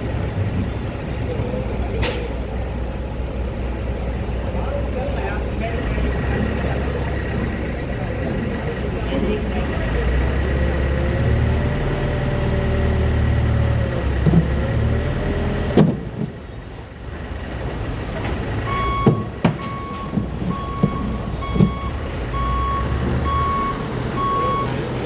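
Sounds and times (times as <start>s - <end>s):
diesel engine whining: 0.0s - 25.0s
metallic knocks: 18.2s - 22.0s
reversing alarm beeping: 18.6s - 24.8s.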